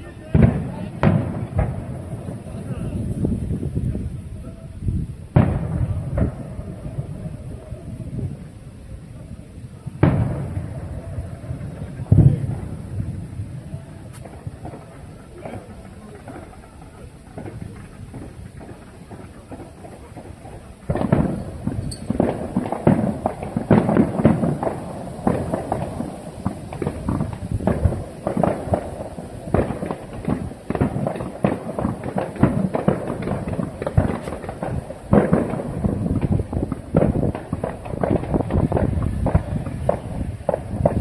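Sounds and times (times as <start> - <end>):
fireworks exploding: 0.0 - 41.0.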